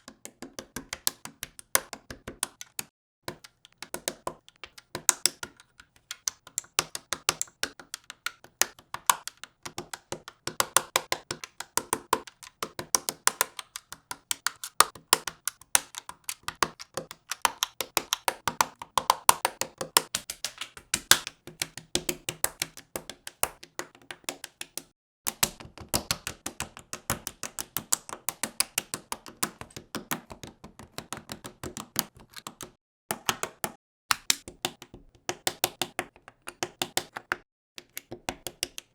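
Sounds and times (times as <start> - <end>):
plastic bricks clicking together: 2.5 - 22.7.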